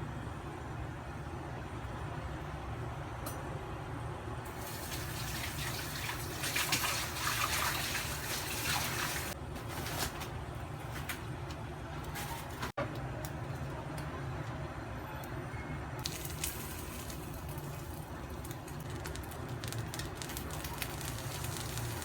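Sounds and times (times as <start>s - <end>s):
water pouring: 4.5s - 9.4s, 16.0s - 22.0s.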